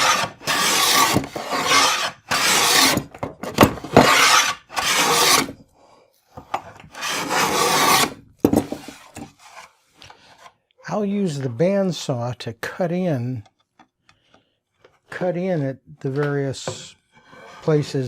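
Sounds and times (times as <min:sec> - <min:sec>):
hand tool shaving wood: 0:00.0 - 0:03.0, 0:03.9 - 0:05.6, 0:07.0 - 0:08.2.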